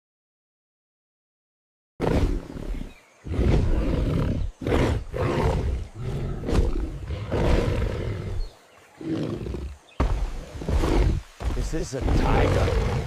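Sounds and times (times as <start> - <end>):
tiger roaring and growling: 2.0 - 13.0.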